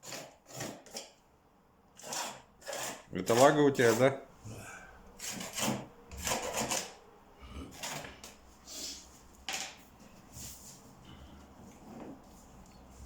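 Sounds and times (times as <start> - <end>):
wood scraping on wood: 0.0 - 1.2, 2.0 - 4.2, 5.2 - 7.0, 7.7 - 8.4.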